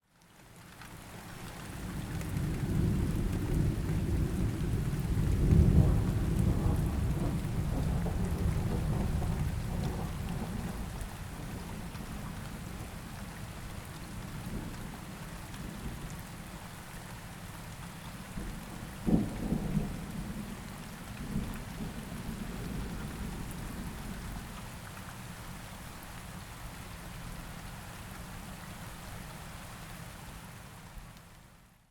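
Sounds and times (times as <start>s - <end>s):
steady rain: 0.0s - 31.9s
rolling thunder: 2.6s - 12.3s, 18.4s - 24.0s.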